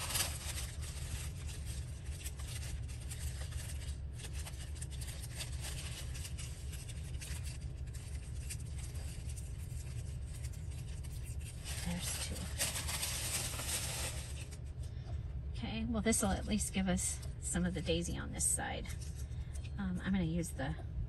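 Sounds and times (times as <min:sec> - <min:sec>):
paper handling: 0:00.0 - 0:14.9
steady low hum: 0:00.0 - 0:21.0.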